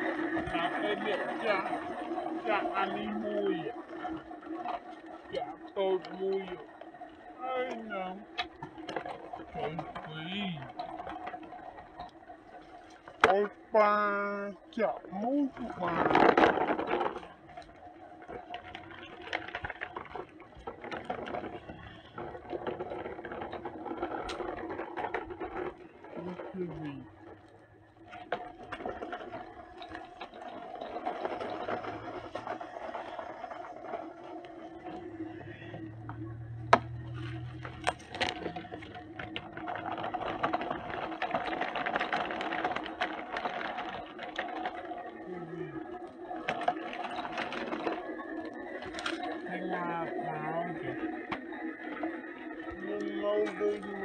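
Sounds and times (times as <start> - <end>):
gears rattling: 0.0 - 54.0
toy electric motor whining: 0.0 - 54.0
clicks and scrapes: 15.6 - 49.6.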